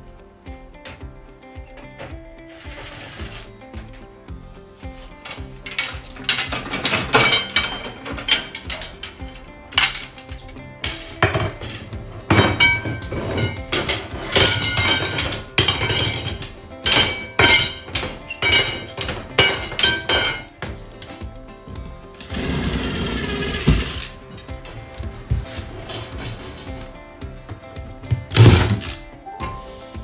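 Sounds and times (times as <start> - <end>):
soft acoustic music: 0.0 - 30.0
metal parts knocking and clinking: 1.8 - 4.2, 4.8 - 29.2
steady scraping noise: 2.5 - 4.0, 22.2 - 27.0.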